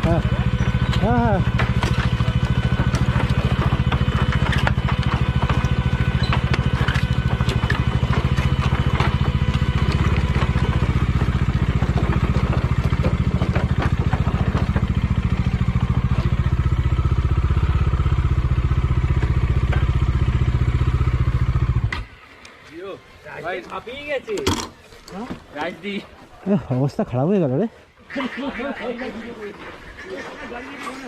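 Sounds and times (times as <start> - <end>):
motorcycle engine at low revs: 0.0 - 23.2
clicks and clatter: 0.3 - 16.3.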